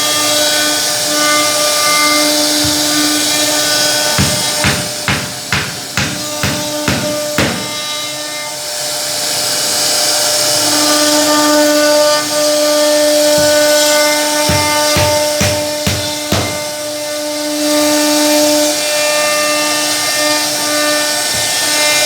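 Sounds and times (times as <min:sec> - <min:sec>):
router spindle whining: 0:00.0 - 0:22.0
sharp rhythmic thumps: 0:02.3 - 0:08.2, 0:12.4 - 0:17.1.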